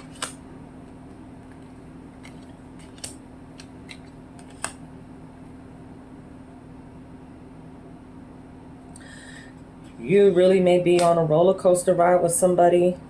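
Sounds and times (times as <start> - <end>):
cards snapping and tapping: 0.0 - 0.4, 1.4 - 4.8
steady low hum: 0.0 - 13.0.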